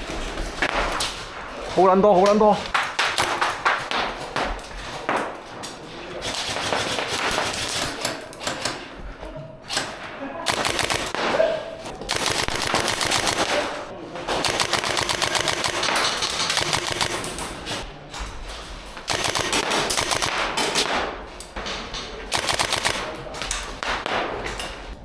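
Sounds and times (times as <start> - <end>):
airsoft guns firing rapidly: 1.8 - 4.7, 6.2 - 8.9, 9.7 - 17.8, 19.1 - 24.7.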